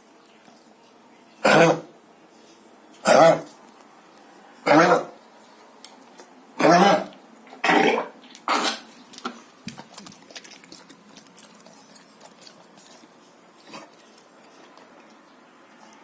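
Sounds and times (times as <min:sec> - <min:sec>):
dog coughing: 0:01.4 - 0:02.0, 0:03.0 - 0:03.6, 0:04.6 - 0:05.2, 0:06.6 - 0:08.9.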